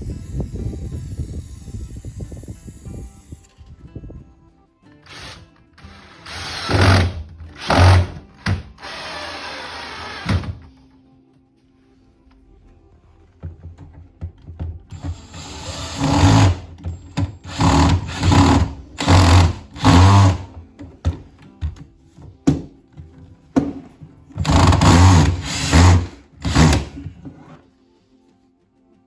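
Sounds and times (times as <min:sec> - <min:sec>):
power drill running in bursts: 0:05.1 - 0:08.1, 0:15.0 - 0:16.7, 0:17.4 - 0:20.5, 0:24.4 - 0:27.0.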